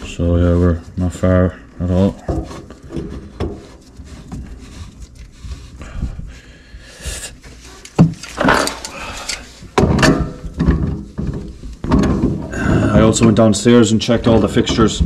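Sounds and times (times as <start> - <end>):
objects knocking and clicking: 7.8 - 13.5.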